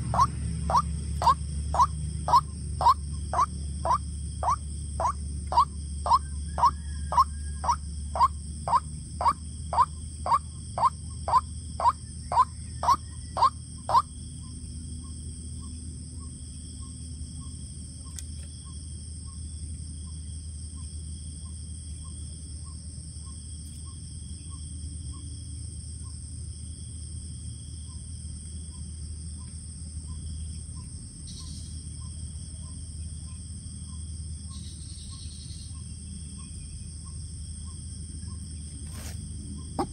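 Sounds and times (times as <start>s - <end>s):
faint bird pips: 0.0s - 14.1s
waterhen calling: 0.0s - 14.1s
high-pitched insect drone: 0.0s - 17.6s
low hum: 0.0s - 17.9s.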